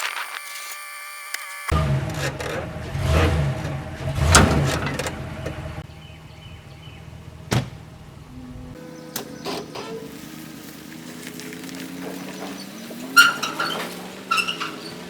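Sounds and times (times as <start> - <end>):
knocks and metal clank: 1.7 - 5.8, 7.4 - 8.0
vehicle engine running: 1.7 - 15.0.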